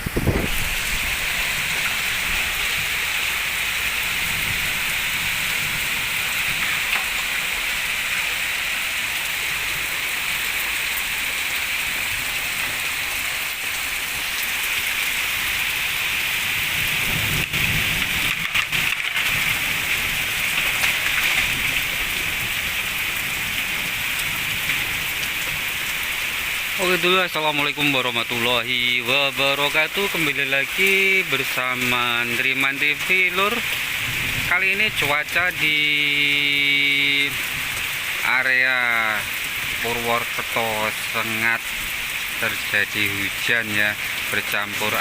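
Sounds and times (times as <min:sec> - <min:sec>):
strong wind: 0:00.0 - 0:26.6, 0:33.6 - 0:35.5
rain falling: 0:00.0 - 0:45.0.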